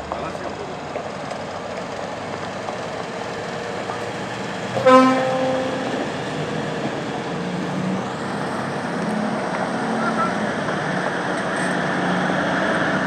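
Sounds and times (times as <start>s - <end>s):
truck engine running: 0.0s - 11.6s
truck horn toot: 4.8s - 6.5s.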